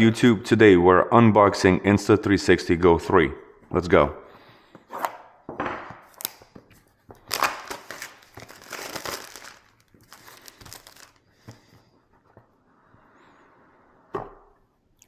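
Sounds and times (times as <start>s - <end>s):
packaging crinkling and tearing: 7.2s - 11.4s.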